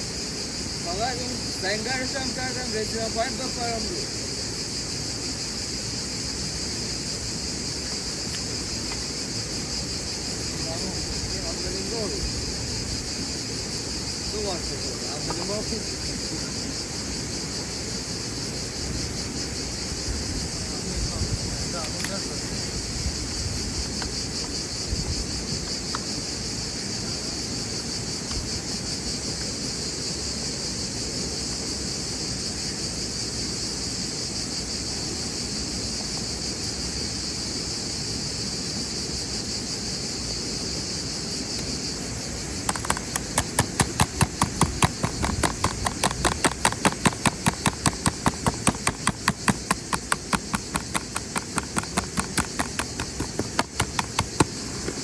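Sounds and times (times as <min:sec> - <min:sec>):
insects buzzing: 0:00.0 - 0:55.0
fast regular ticking clicks: 0:42.6 - 0:54.7.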